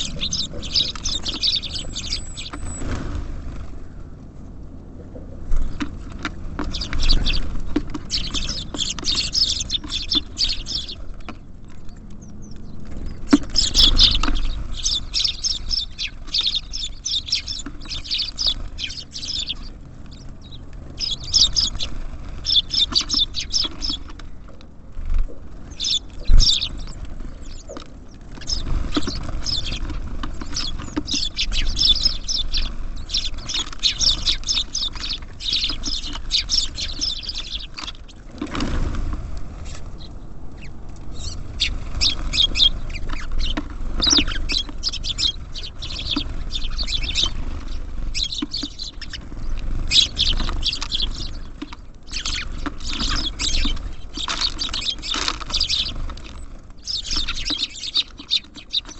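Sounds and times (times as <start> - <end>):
low rumble: 0.0 - 17.6
songbirds chirping: 0.0 - 58.9.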